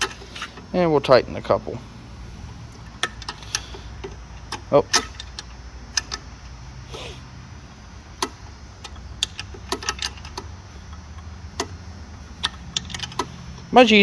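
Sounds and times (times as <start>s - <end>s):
ratchet wrench clicking: 0.0s - 0.7s, 2.7s - 6.5s, 8.2s - 14.0s.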